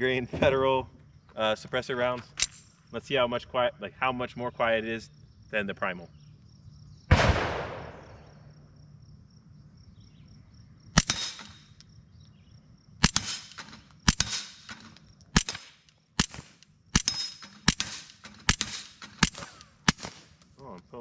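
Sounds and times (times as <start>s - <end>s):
suppressed pistol shots: 7.1s - 8.3s, 11.0s - 11.8s, 13.0s - 20.4s.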